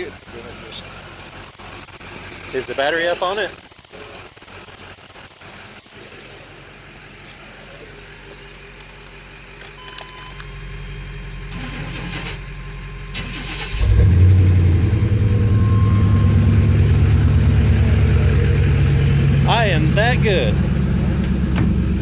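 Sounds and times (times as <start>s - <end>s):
truck engine cranking and running: 0.0s - 22.0s.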